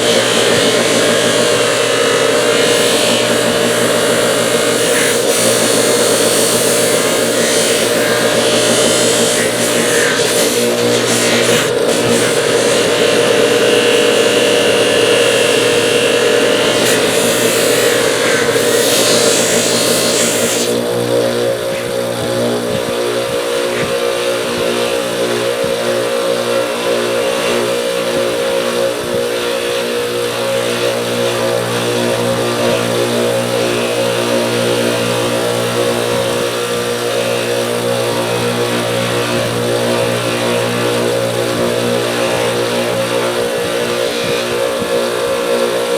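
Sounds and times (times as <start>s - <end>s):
grinding hiss: 0.0s - 22.2s
electric motor running: 0.0s - 45.9s.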